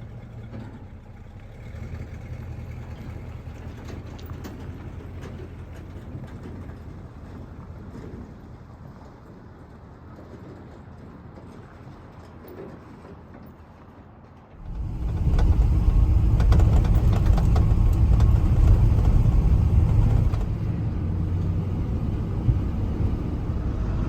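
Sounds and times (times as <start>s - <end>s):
pickup truck engine starting: 0.0s - 8.2s, 14.6s - 24.0s
truck engine running loud: 14.6s - 24.0s.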